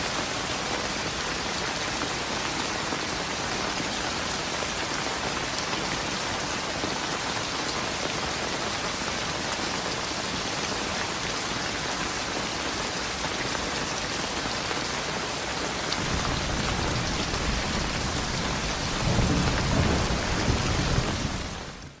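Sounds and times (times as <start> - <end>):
heavy rain on a road: 0.0 - 22.0
low rumble of thunder: 16.0 - 22.0.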